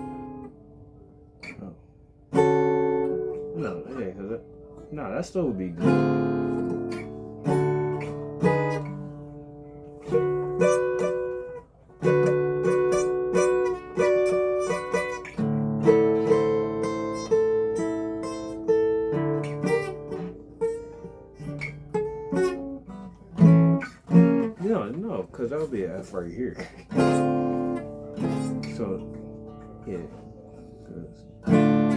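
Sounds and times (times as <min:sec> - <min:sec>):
acoustic guitar strumming: 0:00.0 - 0:31.9.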